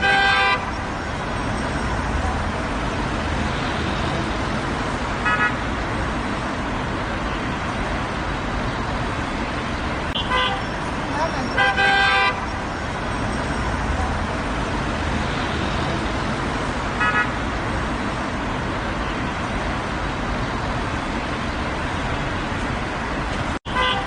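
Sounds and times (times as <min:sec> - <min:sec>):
car horn toot: 0:00.0 - 0:00.7, 0:10.2 - 0:10.7, 0:11.4 - 0:12.5, 0:17.0 - 0:17.4, 0:23.7 - 0:24.0
road traffic rumble: 0:00.0 - 0:24.0.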